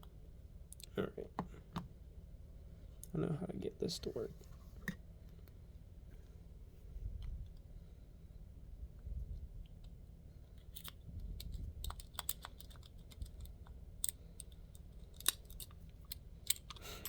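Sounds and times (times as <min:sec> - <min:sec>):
lock pick clicking and scraping: 0:10.6 - 0:17.0.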